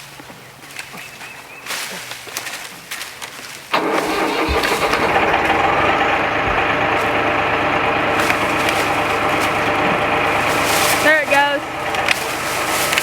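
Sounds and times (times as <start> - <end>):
engine running loudly: 3.8 - 13.0.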